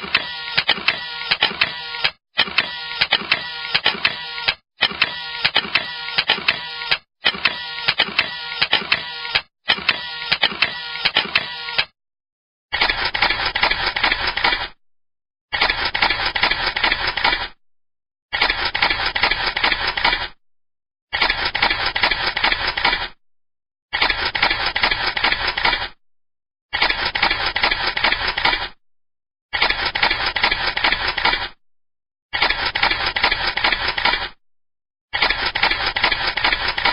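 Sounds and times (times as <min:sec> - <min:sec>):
camera shutter rapid bursts: 0:00.0 - 0:11.9, 0:12.7 - 0:14.8, 0:15.5 - 0:17.6, 0:18.3 - 0:20.4, 0:21.1 - 0:23.2, 0:23.9 - 0:26.0, 0:26.7 - 0:28.8, 0:29.6 - 0:31.6, 0:32.4 - 0:34.4, 0:35.1 - 0:36.9.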